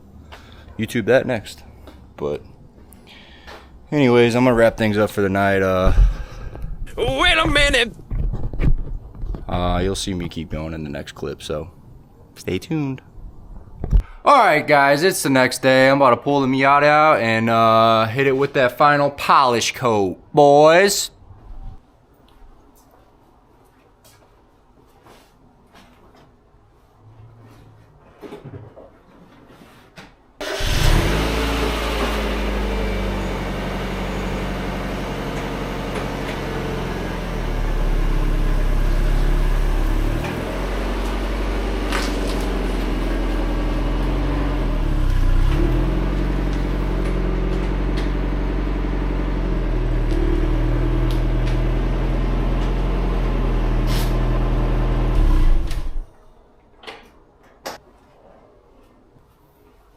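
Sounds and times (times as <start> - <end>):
car engine running: 30.5 - 56.0.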